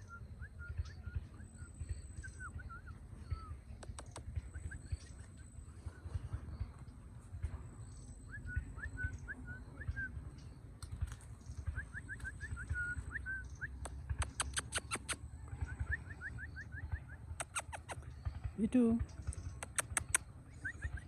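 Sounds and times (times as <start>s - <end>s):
sharp clicks: 3.8s - 4.6s, 11.9s - 15.2s, 17.4s - 18.0s, 19.0s - 20.8s
parrot chirping: 11.9s - 15.2s, 15.8s - 18.0s, 19.5s - 21.0s.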